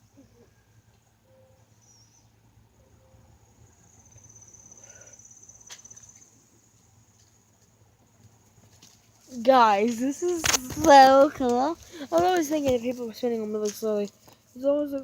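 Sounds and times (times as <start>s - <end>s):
high-pitched insect trill: 3.7s - 6.4s.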